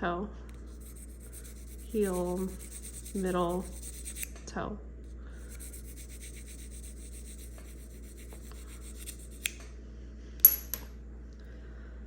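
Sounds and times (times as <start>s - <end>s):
blade scraping on sharpening stone: 0.6s - 4.3s, 5.4s - 9.6s.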